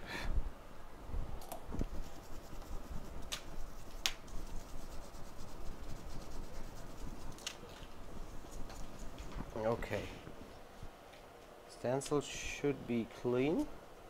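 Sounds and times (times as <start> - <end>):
scrubbing a stencil: 1.9 - 7.5, 8.1 - 9.4.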